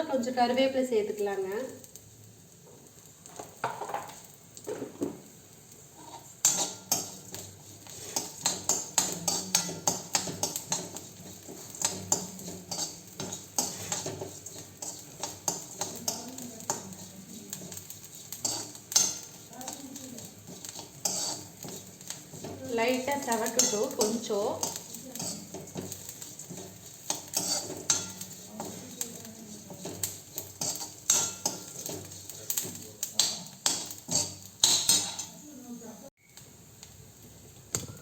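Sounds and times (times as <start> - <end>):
light sizzle of oil: 0.0 - 38.0
spoon scraping an iron pan: 6.0 - 35.4.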